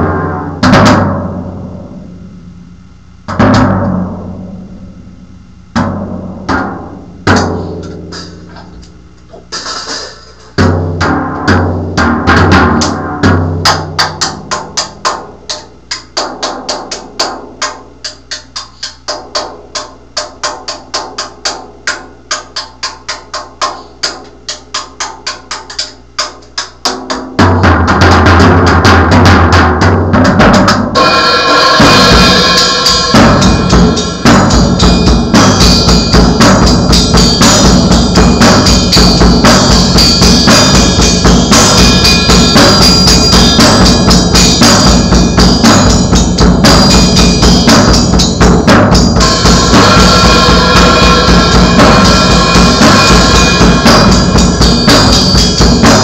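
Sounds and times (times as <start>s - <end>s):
loud music with bass: 0.0s - 22.6s, 28.4s - 56.0s
drum kit playing: 0.0s - 56.0s.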